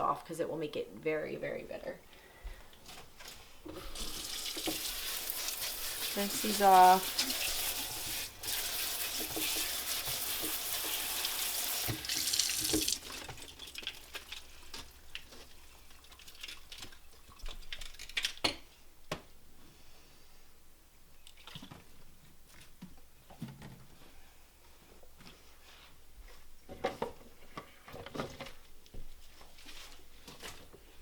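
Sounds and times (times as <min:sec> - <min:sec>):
faucet running: 0:03.8 - 0:14.5.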